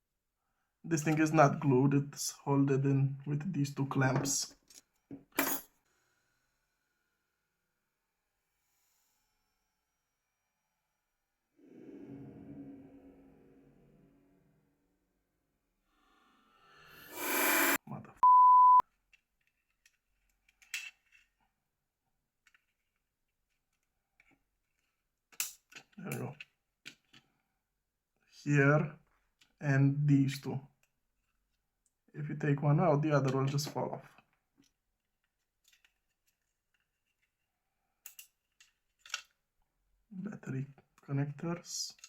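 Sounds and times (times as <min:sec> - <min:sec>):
censor bleep: 0:18.2 - 0:18.8.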